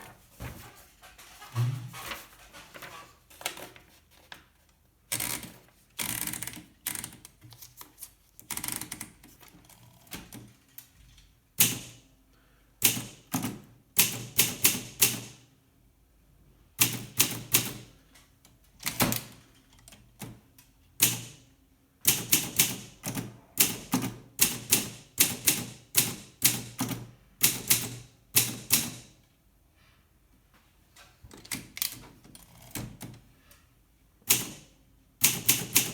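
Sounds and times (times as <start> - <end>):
manual typewriter typing: 5.1 - 10.8, 16.8 - 17.9, 22.1 - 29.2, 34.2 - 35.9.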